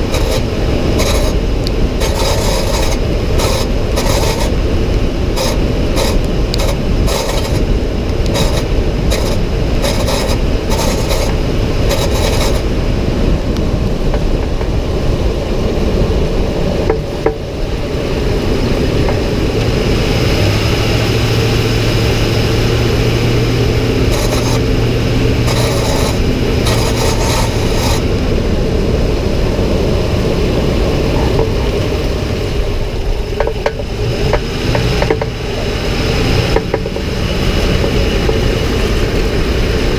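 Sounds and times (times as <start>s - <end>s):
truck engine and road noise: 0.0s - 39.9s.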